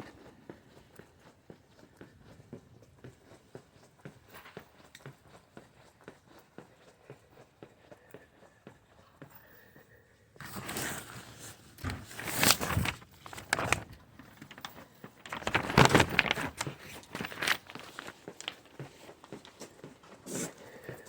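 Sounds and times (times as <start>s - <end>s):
rustling and scuffing: 10.4s - 21.0s.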